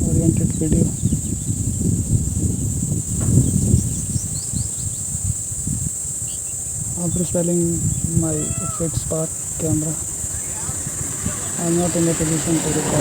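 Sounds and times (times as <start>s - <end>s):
high-pitched insect chorus: 0.0s - 13.0s
low rumbling noise: 6.8s - 13.0s.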